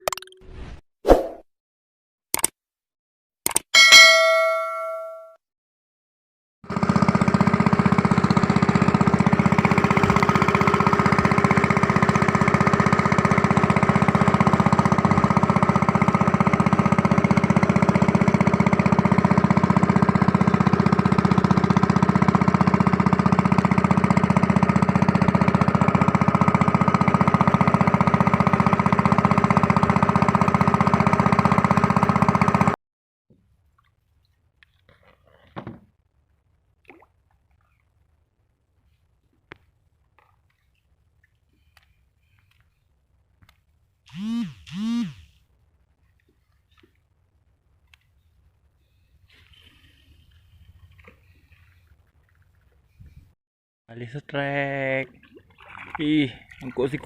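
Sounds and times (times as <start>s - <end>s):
engine running steadily: 6.7s - 32.8s, 44.1s - 45.4s.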